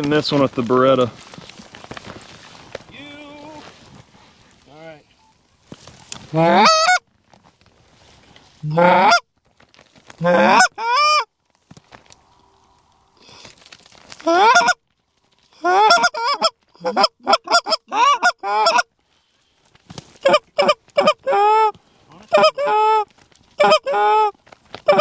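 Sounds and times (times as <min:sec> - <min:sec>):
goose honking: 0:06.3 - 0:07.0, 0:10.2 - 0:11.2, 0:14.3 - 0:14.8, 0:15.7 - 0:18.9, 0:22.3 - 0:23.0, 0:23.6 - 0:24.3.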